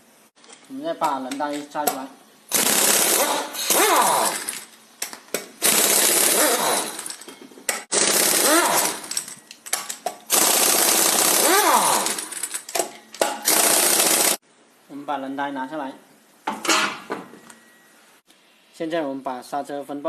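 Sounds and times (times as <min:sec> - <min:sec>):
impact wrench hammering: 0:05.6 - 0:09.2.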